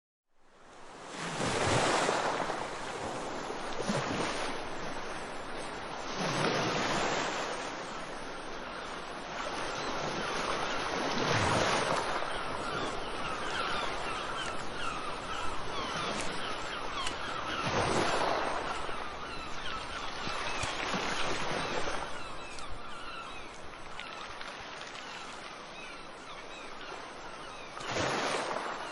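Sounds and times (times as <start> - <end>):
sea waves washing onto shore: 0.7 - 26.6, 27.2 - 28.9
seagulls calling: 8.2 - 28.9.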